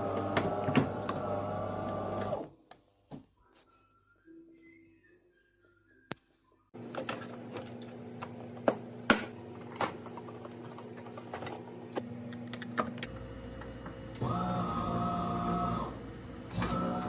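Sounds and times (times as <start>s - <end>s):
coffee machine humming: 0.0s - 2.5s, 6.8s - 17.0s.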